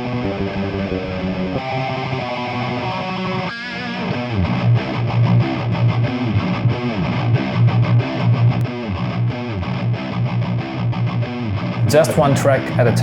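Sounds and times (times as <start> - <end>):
distorted guitar chugging: 0.0 - 13.0
distorted lead guitar line: 0.0 - 13.0.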